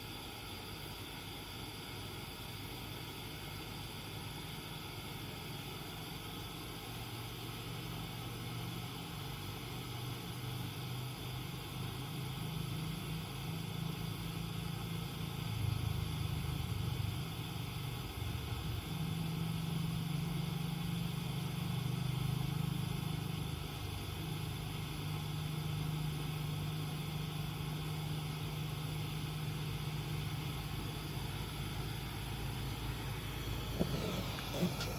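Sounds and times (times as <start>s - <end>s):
pressure lantern hissing: 0.0s - 34.9s.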